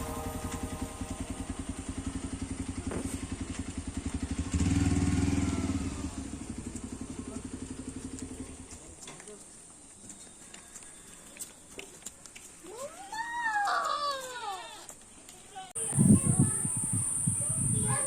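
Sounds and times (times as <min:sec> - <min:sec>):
small engine idling: 0:00.0 - 0:09.0, 0:15.8 - 0:18.0.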